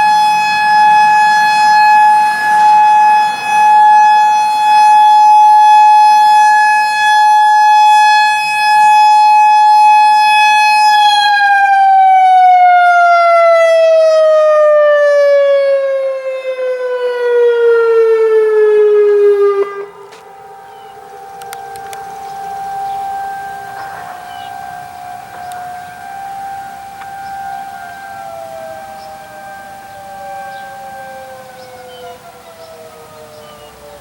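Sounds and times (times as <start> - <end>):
electronic warning siren: 0.0 - 34.0.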